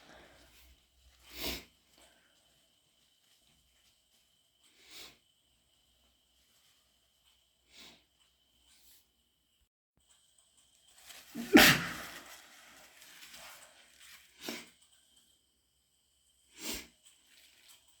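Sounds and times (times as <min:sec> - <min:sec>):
person sneezing: 0:11.4 - 0:12.5
sniffles: 0:11.4 - 0:12.6.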